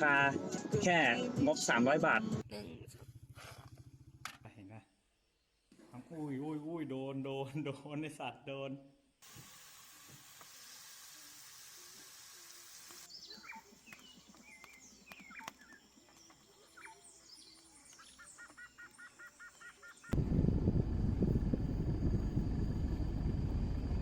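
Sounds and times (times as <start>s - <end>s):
steady high hiss: 9.2s - 18.0s
birds chirping: 12.5s - 20.2s
loud low rumble: 20.2s - 24.0s.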